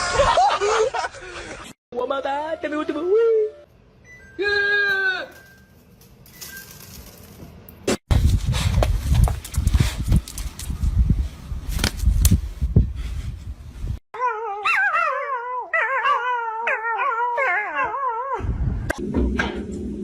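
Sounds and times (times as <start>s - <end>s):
pet howling: 14.2s - 18.4s.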